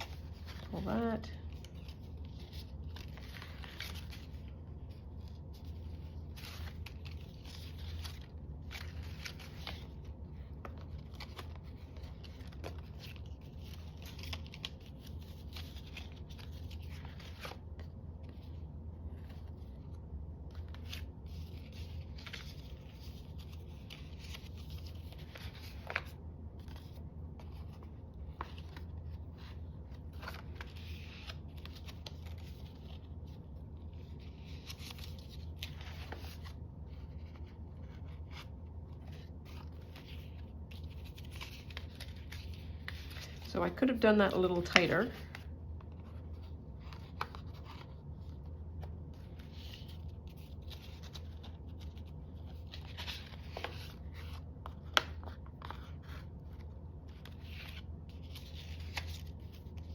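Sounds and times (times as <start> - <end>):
pages rustling: 0.0 - 59.9.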